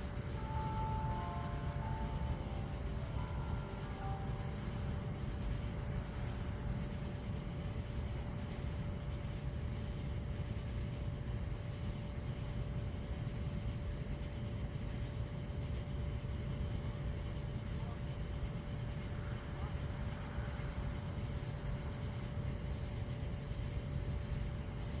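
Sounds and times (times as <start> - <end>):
high-pitched chirping: 0.1 - 5.5.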